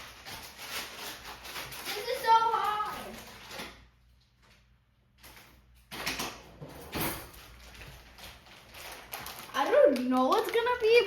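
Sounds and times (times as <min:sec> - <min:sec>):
clatters and scrapes of handling: 0:00.0 - 0:10.9.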